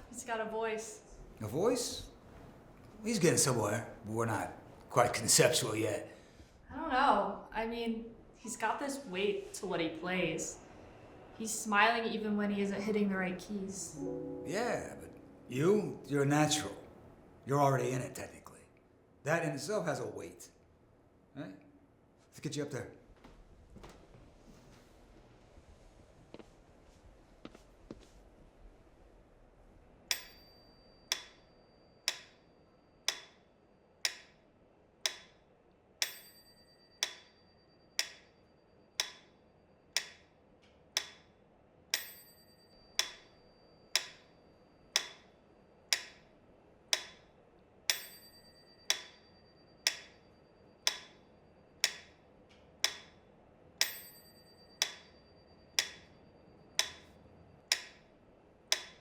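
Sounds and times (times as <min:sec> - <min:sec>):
metronome clicking: 0:31.1 - 0:31.4, 0:32.1 - 0:32.4, 0:33.1 - 0:33.4, 0:34.1 - 0:34.4, 0:35.1 - 0:35.4, 0:37.0 - 0:37.3, 0:38.0 - 0:38.3, 0:39.0 - 0:39.3, 0:40.0 - 0:40.2, 0:43.0 - 0:43.3, 0:43.9 - 0:44.3, 0:44.9 - 0:45.3, 0:45.9 - 0:46.2, 0:46.9 - 0:47.2, 0:48.9 - 0:49.2, 0:49.8 - 0:50.2, 0:50.8 - 0:51.2, 0:51.8 - 0:52.2, 0:52.8 - 0:53.2, 0:54.8 - 0:55.1, 0:55.8 - 0:56.1, 0:56.8 - 0:57.1, 0:57.7 - 0:58.1, 0:58.7 - 0:59.0.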